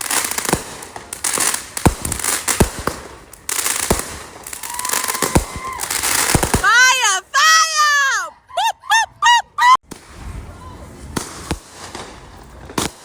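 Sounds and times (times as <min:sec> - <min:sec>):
crackling hiss: 0:00.0 - 0:06.7
fireworks bangs: 0:00.0 - 0:07.6, 0:09.8 - 0:13.0.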